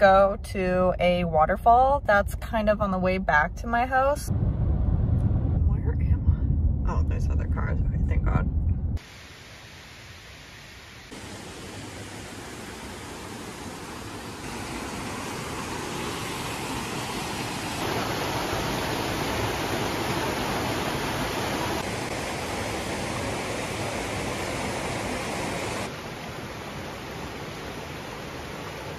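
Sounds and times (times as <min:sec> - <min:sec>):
waterfall rushing: 0:09.0 - 0:28.9.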